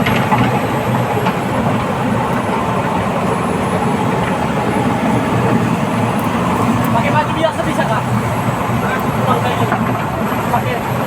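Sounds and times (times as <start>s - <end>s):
bulldozer diesel engine clattering: 0.0s - 11.0s.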